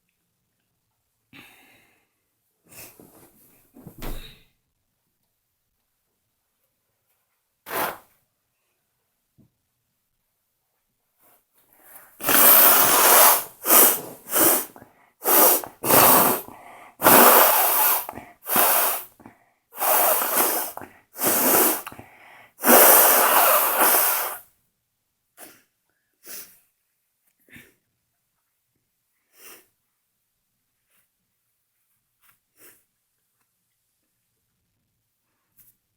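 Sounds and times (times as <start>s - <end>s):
noisy breaths: 11.7s - 24.4s
person sneezing: 12.2s - 24.4s.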